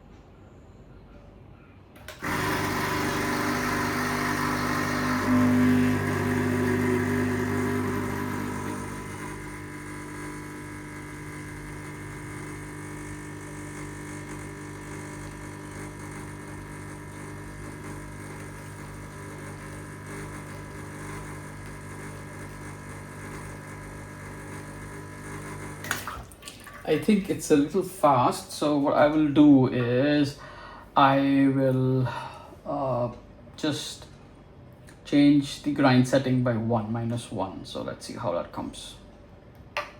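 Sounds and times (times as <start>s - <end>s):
espresso machine pump humming: 2.0s - 27.5s.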